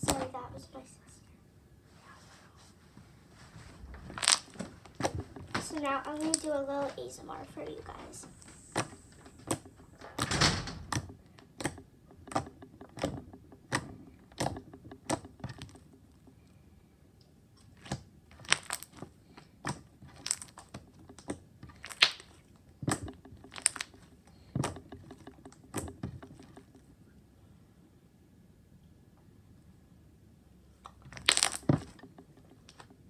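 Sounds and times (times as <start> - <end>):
slime squished by hand: 4.0 - 6.5, 17.6 - 24.8, 31.1 - 31.9.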